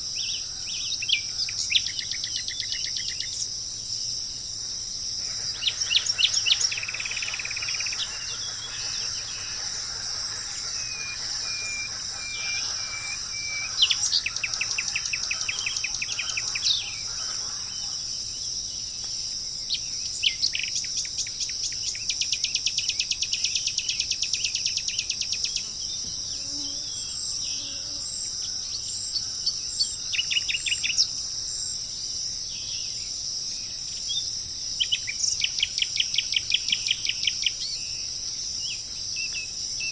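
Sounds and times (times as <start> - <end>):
songbirds singing: 0.0 - 39.9
high-pitched insect drone: 2.3 - 18.6.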